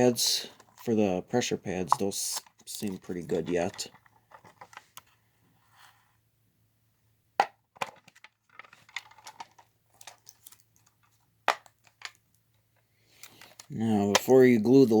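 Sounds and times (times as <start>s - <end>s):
plastic rattling and tapping: 1.9s - 5.1s, 7.4s - 12.2s.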